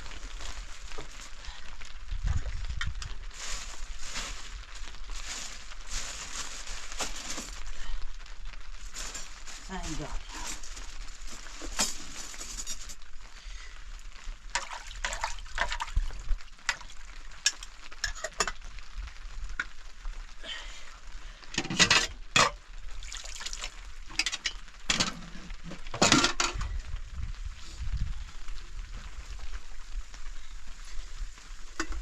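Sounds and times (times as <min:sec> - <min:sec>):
food sizzling in a pan: 0:14.0 - 0:20.4, 0:27.6 - 0:32.0.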